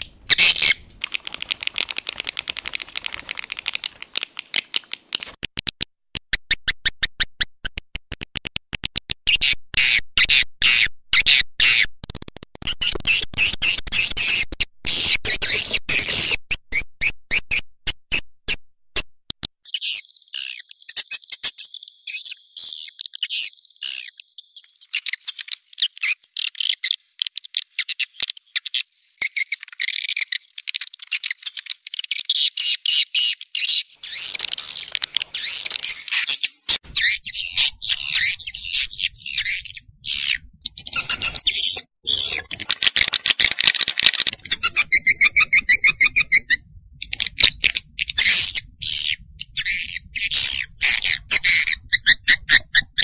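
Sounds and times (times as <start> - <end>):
high twittering bird chirps: 0.0 - 5.4, 32.4 - 42.4, 44.4 - 53.0.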